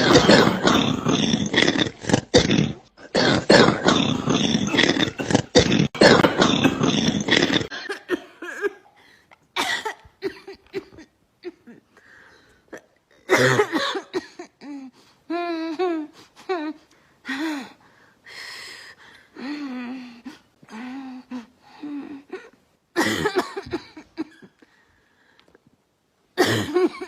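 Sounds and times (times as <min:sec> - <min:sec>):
person coughing: 0:00.0 - 0:09.0, 0:09.6 - 0:11.8, 0:12.7 - 0:14.6, 0:23.0 - 0:24.6, 0:26.4 - 0:27.0.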